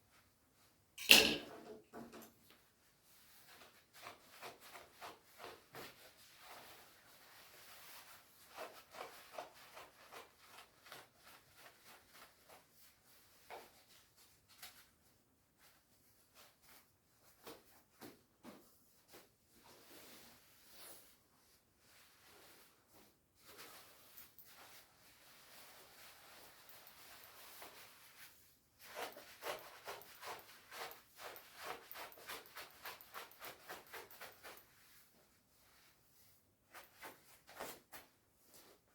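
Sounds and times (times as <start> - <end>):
jacket fabric rustling: 2.5 - 38.9
nylon jacket rustling: 21.8 - 38.9.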